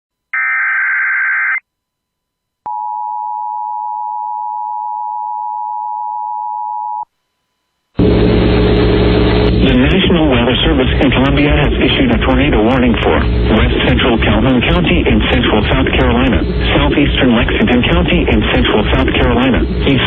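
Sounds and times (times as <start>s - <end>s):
loud steady buzz with hum: 8.0s - 20.0s.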